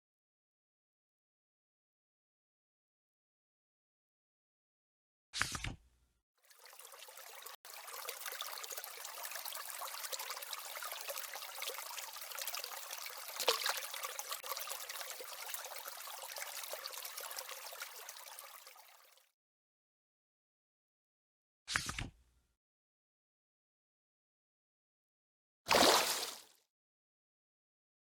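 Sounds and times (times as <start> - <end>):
trickling water stream: 6.4 - 19.3, 25.7 - 26.5.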